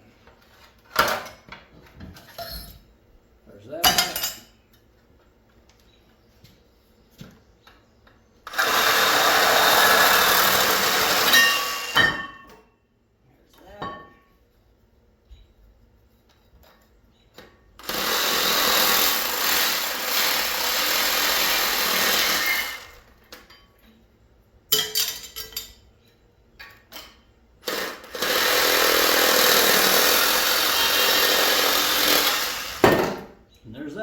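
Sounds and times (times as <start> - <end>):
reciprocating saw cutting metal tubing: 27.7 - 32.8.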